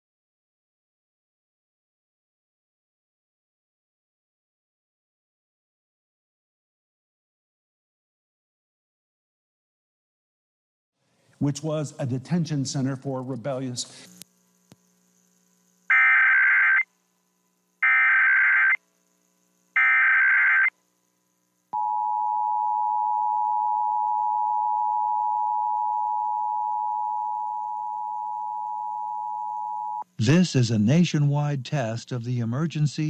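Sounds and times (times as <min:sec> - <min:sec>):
digital data tone bursts: 0:15.9 - 0:16.9, 0:17.8 - 0:18.8, 0:19.7 - 0:20.8.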